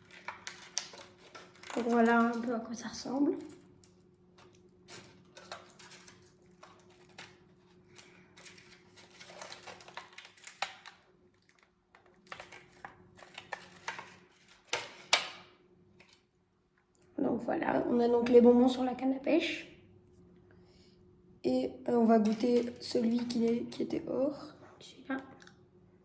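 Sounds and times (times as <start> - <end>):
crinkly rustles: 0.0 - 16.3, 22.1 - 24.4
faint steady hum: 0.0 - 26.0.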